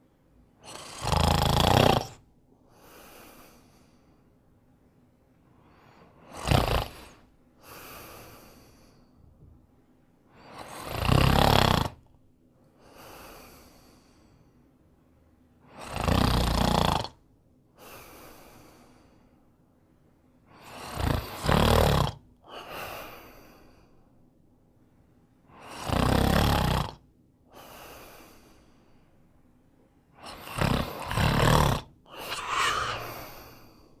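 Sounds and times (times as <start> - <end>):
person snoring: 0.6 - 4.0, 5.7 - 9.0, 10.4 - 12.0, 15.7 - 17.2, 20.6 - 23.8, 25.5 - 27.0, 30.2 - 34.0
quiet breath: 2.2 - 10.9, 12.4 - 15.9, 17.6 - 21.4, 22.4 - 25.9, 27.4 - 34.0.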